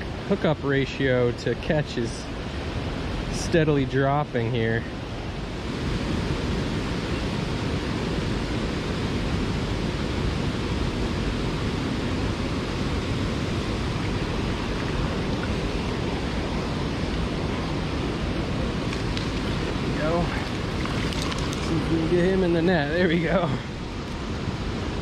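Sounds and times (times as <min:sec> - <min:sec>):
stream water rushing: 0:12.1 - 0:25.0.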